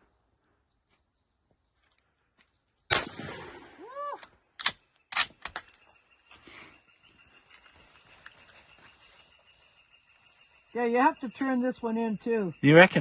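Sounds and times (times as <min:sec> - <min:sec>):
rifle shot: 0:02.9 - 0:03.9.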